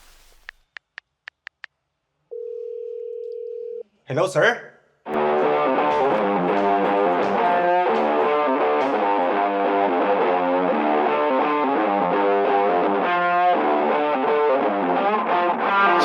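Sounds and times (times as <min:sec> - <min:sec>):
distorted electric guitar: 0:05.1 - 0:16.0.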